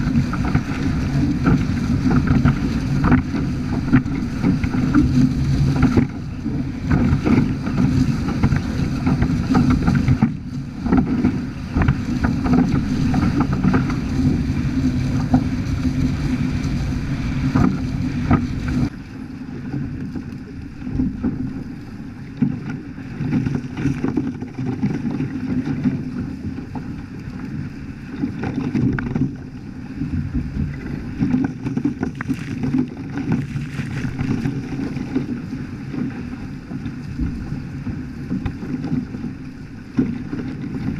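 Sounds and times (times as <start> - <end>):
water rushing along hull: 0.0 - 40.9
wind buffeting microphone: 0.0 - 40.9.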